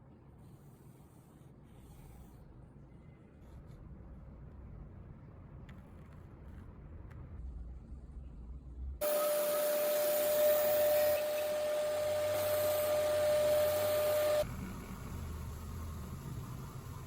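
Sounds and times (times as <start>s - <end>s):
small electric motor whining: 9.0s - 14.5s
hiss: 9.0s - 17.0s.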